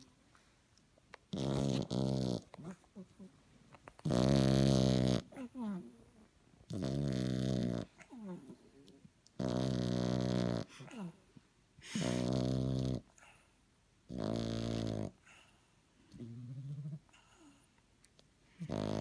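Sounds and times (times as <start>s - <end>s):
puppy snoring: 1.2s - 3.3s, 4.0s - 11.2s, 11.8s - 17.7s, 18.5s - 19.0s
faint breaths: 10.6s - 12.3s, 15.2s - 16.3s.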